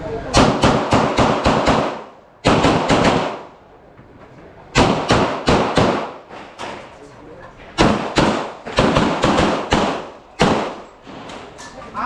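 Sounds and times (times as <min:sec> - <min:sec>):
handgun shots: 0:00.3 - 0:03.5, 0:04.8 - 0:06.8, 0:07.8 - 0:11.5.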